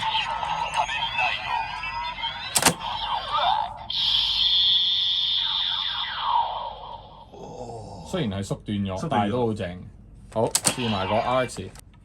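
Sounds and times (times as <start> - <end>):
toy belt electronic sound effect: 0.0 - 7.3.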